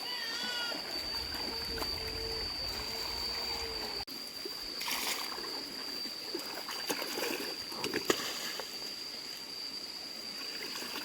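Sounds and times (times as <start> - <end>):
steady high-pitched tone: 0.2 - 4.4
stream water trickling: 0.5 - 11.0.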